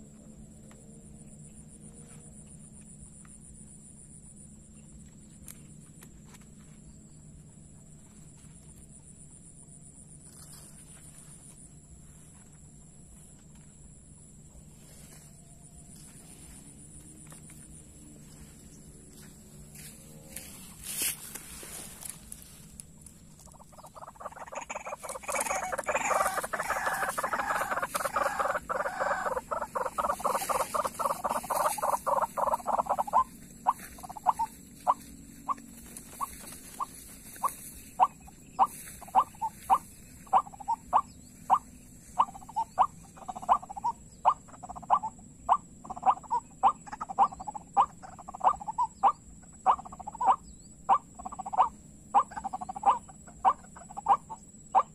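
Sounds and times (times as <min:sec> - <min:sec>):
waterhen calling: 0:23.4 - 0:54.9.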